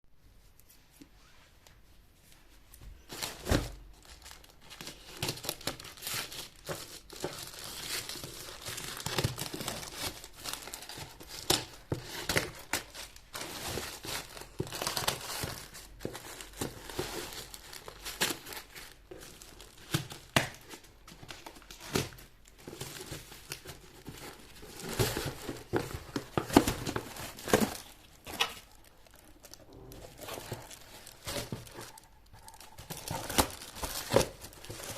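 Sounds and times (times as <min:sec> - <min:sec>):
packaging crinkling and tearing: 0:03.0 - 0:34.9.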